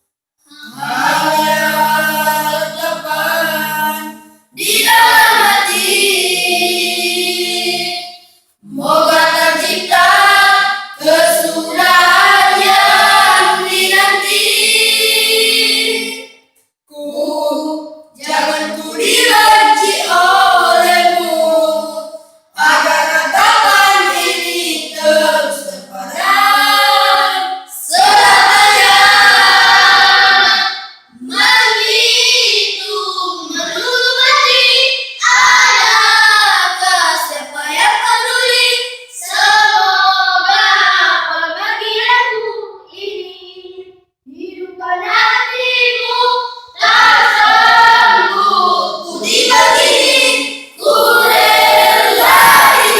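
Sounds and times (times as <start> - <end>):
group singing without instruments: 0.5 - 42.4, 45.3 - 52.9.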